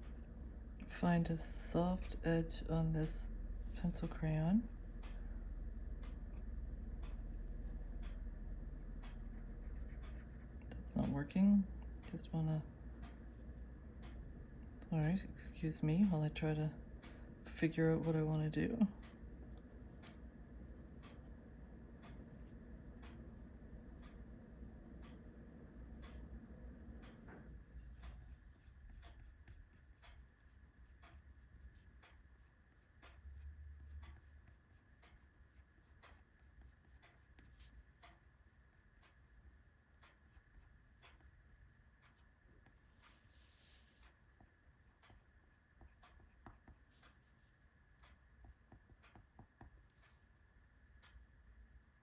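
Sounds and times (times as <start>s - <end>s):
pencil scratching on paper: 0.0s - 2.9s, 7.1s - 11.4s, 12.0s - 13.5s, 20.5s - 50.1s.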